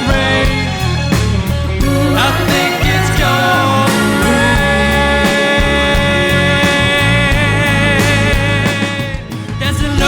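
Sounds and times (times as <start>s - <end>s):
drum hits: 0.0s - 10.0s
live rock band playing: 0.0s - 10.0s.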